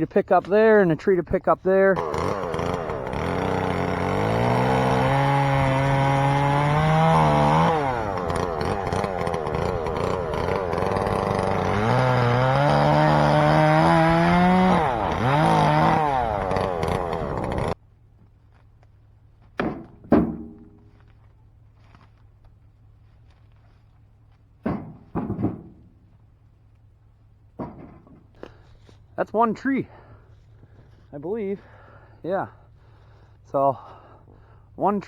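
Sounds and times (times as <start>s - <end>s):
chainsaw revving and cutting: 2.0s - 17.8s
short knocks: 24.6s - 25.9s, 27.6s - 28.4s.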